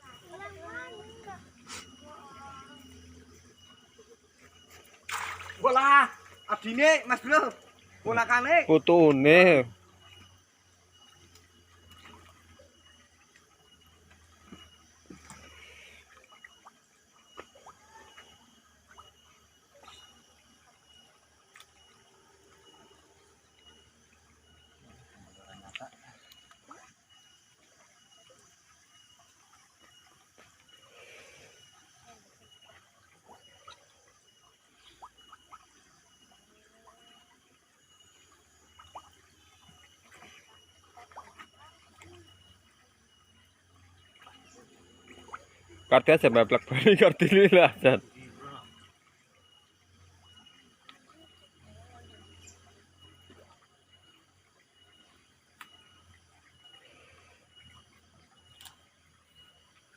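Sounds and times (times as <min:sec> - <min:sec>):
faint short chirping calls: 0:00.0 - 0:08.4, 0:09.3 - 0:46.1, 0:48.0 - 0:59.9
faint high-pitched tone: 0:00.0 - 0:59.9
faint ticks: 0:55.5 - 0:56.7, 0:57.6 - 0:59.0.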